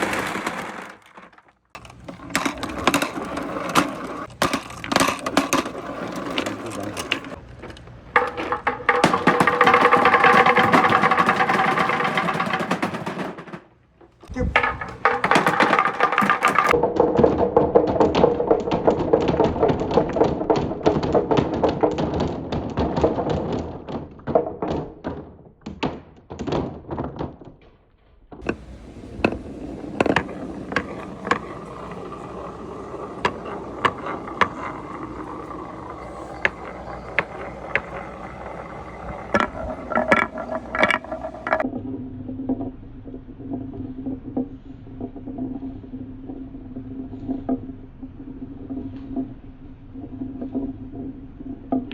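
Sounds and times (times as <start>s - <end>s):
balls rolling down a marble run: 0.0s - 25.3s, 28.4s - 51.9s
sharp clicks of balls: 0.0s - 27.6s, 28.3s - 41.7s.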